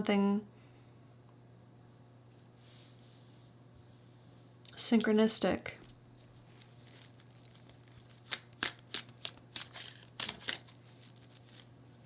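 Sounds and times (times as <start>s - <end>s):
cards being shuffled: 5.8s - 12.0s.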